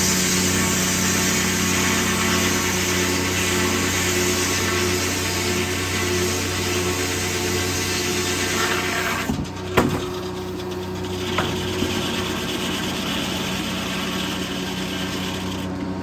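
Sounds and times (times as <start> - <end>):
circular saw cutting log: 0.0 - 16.0
sawmill engine drone: 0.0 - 16.0.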